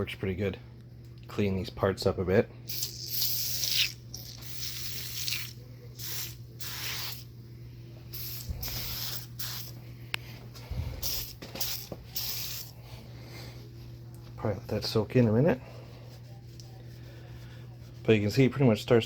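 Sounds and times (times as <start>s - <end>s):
aerosol can spraying: 2.7s - 7.3s, 8.1s - 9.8s, 11.0s - 12.8s.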